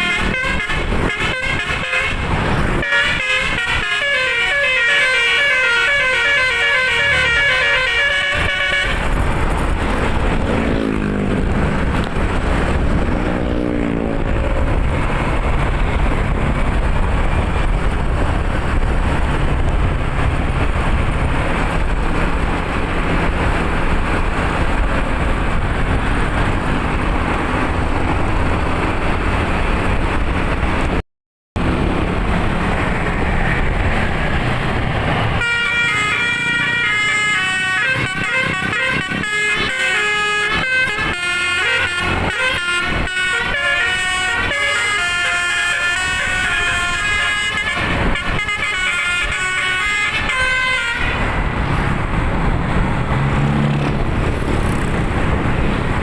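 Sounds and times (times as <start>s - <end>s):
multi-tone air horn melody: 0.0s - 9.1s, 35.4s - 51.3s
bus engine and road noise: 0.0s - 56.0s.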